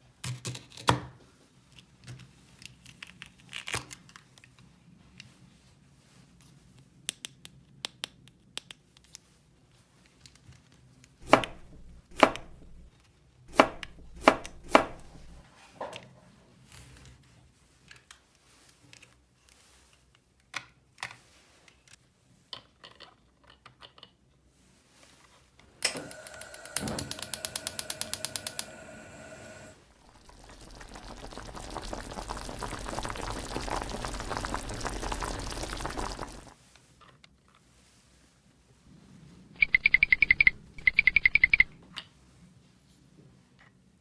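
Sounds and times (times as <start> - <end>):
ratchet-like clicking: 11.2 - 12.9, 13.5 - 15.4, 25.8 - 29.8
small objects clicking and tapping: 11.2 - 12.9, 13.5 - 15.4, 25.8 - 28.9.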